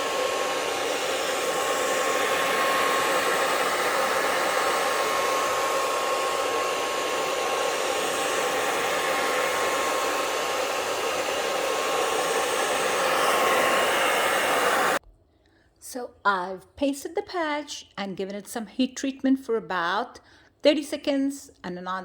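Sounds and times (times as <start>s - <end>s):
hair dryer blowing: 0.0s - 15.0s.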